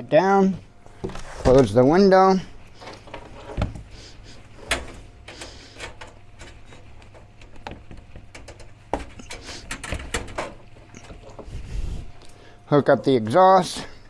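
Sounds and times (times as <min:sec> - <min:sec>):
parts clicking and knocking: 0:00.9 - 0:11.6.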